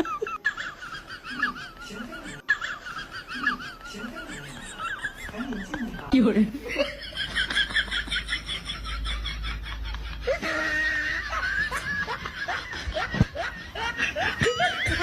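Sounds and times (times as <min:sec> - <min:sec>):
person laughing: 0:06.7 - 0:15.0.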